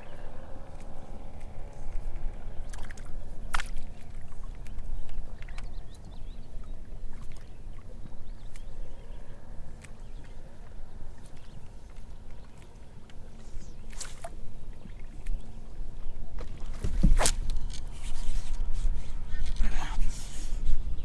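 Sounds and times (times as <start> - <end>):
low rumbling of boat: 0.0 - 21.0.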